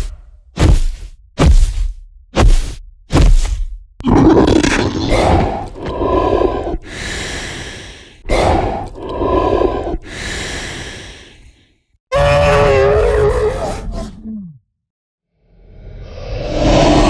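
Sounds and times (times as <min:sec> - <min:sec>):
monster growl: 0:04.0 - 0:07.4
long breathy hiss: 0:10.1 - 0:11.6.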